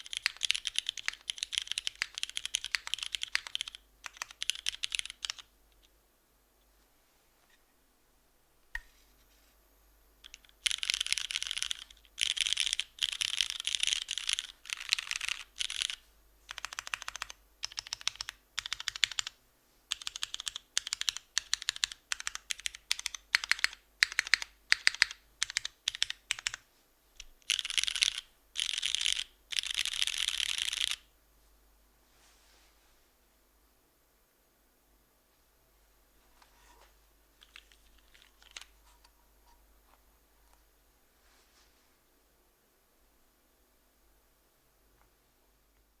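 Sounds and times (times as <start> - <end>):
mechanical keyboard typing: 0.0 - 5.5, 10.2 - 26.6, 27.4 - 31.0, 37.4 - 38.7.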